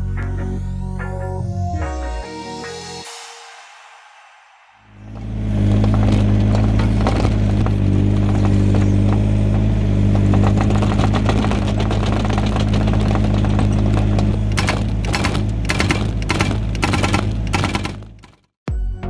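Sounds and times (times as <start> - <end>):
diesel engine running: 5.0 - 18.5
sharp knocks: 5.1 - 18.4.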